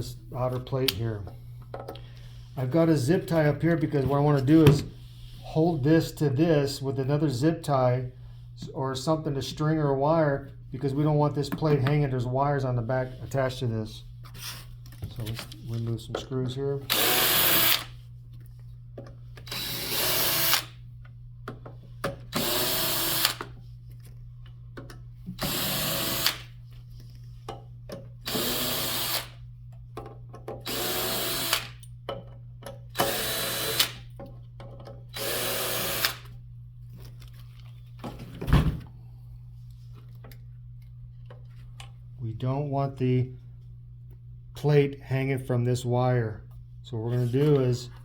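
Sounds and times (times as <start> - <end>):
steady low hum: 0.0 - 48.0
power drill bursts: 16.9 - 17.9, 19.4 - 20.8, 22.3 - 23.4, 25.4 - 26.5, 28.2 - 29.4, 30.7 - 31.8, 33.0 - 34.0, 35.2 - 36.2.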